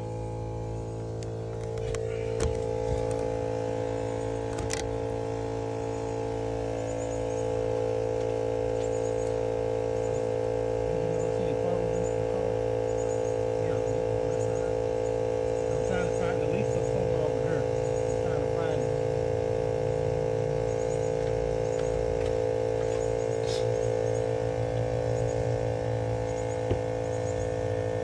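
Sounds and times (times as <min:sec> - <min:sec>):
electrical hum: 0:00.0 - 0:28.0
sharp clicks: 0:04.4 - 0:05.2.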